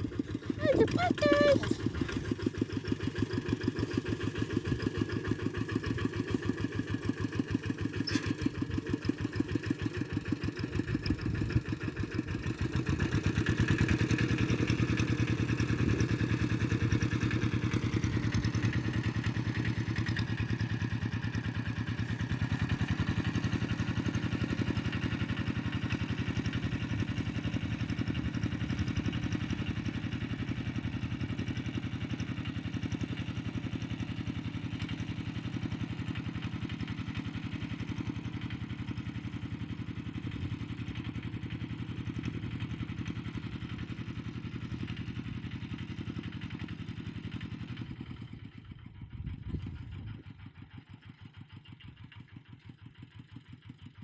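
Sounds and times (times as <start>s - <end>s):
tractor engine pulsing: 0.0s - 11.8s.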